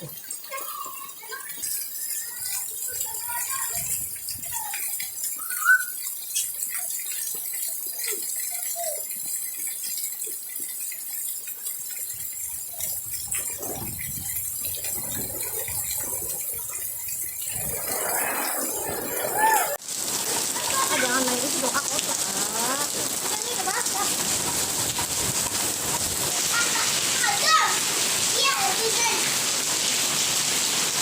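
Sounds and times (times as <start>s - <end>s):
rain hiss: 0.0s - 31.0s
water splashing and sloshing: 0.0s - 31.0s
child crying out: 19.3s - 19.8s.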